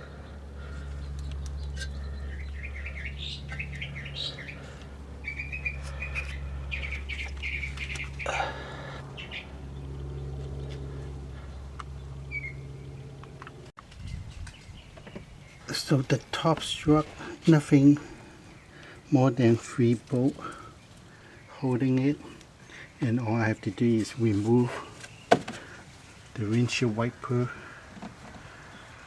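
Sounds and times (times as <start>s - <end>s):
steady low hum: 0.0s - 25.0s
small birds chirping: 0.0s - 29.0s.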